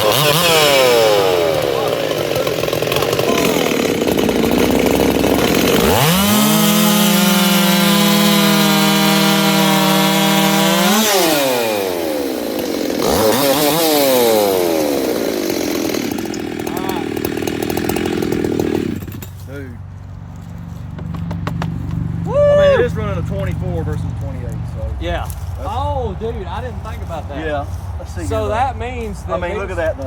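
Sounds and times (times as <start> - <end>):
chainsaws revving at full throttle: 0.0 - 19.7.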